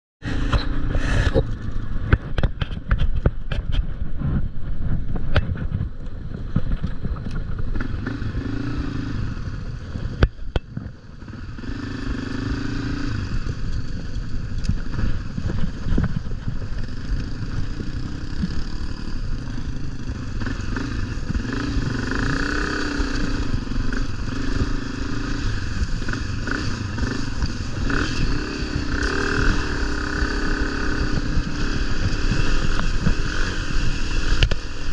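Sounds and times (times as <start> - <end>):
vehicle engine under load: 0.2 - 34.9
sharp knocks and clatters: 1.2 - 7.8.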